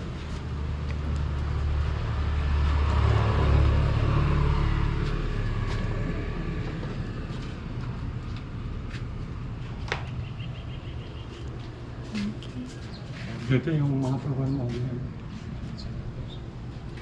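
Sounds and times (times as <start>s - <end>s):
vehicle passing by: 0.0s - 17.0s.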